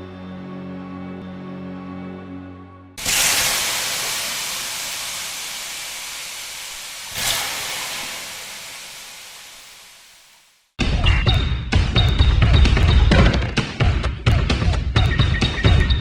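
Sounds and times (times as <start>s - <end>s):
loud rushing hiss: 3.0s - 10.8s.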